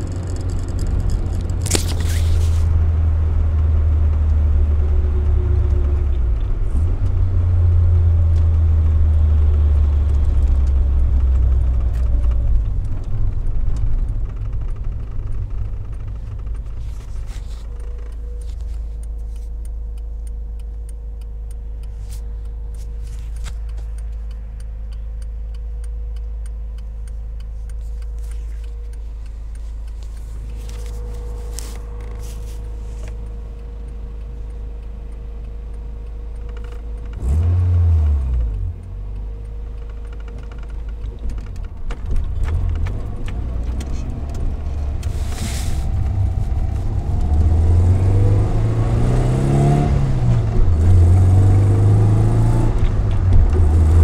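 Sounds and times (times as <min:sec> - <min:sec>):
car engine running and revving: 0:00.0 - 0:54.0
fast light ticking: 0:17.7 - 0:37.2.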